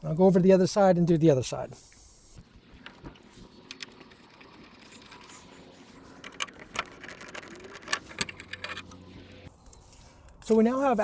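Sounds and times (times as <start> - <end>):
screwdriver and bolts clicking: 3.6 - 9.2.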